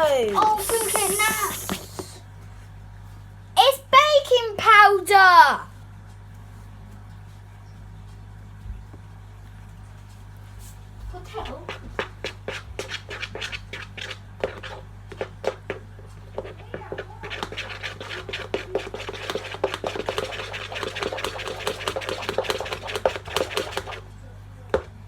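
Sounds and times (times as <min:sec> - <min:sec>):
spoon scraping a bowl: 0:11.7 - 0:15.6, 0:16.2 - 0:24.0.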